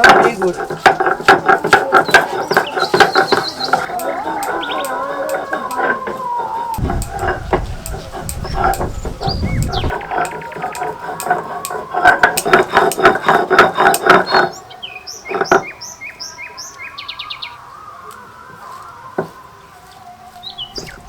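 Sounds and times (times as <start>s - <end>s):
rapid clattering strokes: 0.0s - 14.5s
small birds chirping: 1.5s - 11.2s, 13.8s - 21.0s.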